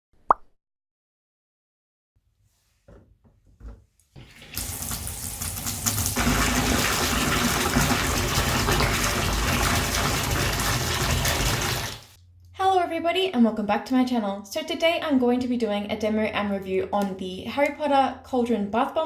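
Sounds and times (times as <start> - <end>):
water gushing from tap into bathtub: 4.1 - 12.2.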